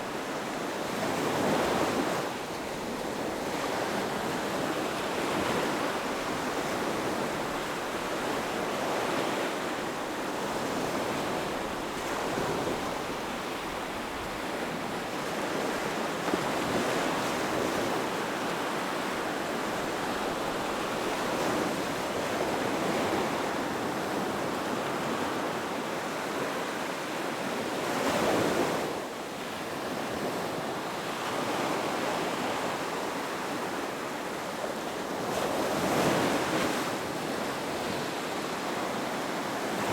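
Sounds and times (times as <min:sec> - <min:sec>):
ocean waves breaking on shore: 0:00.0 - 0:39.9.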